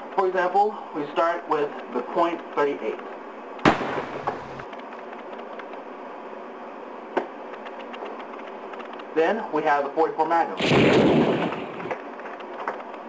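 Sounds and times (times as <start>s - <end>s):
handgun shot: 3.6s - 4.4s.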